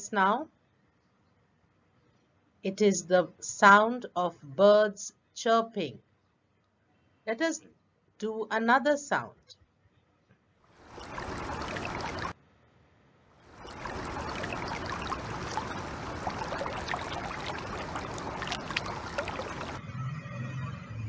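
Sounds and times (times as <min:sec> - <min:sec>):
water flowing: 0:10.8 - 0:12.4, 0:13.5 - 0:19.8.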